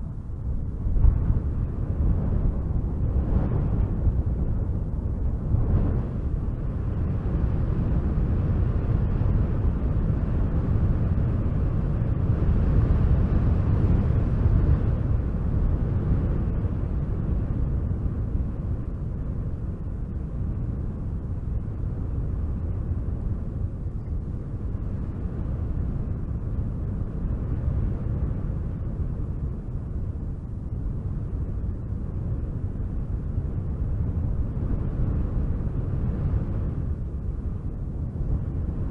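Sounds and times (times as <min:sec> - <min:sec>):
wind blowing: 0:00.0 - 0:20.8.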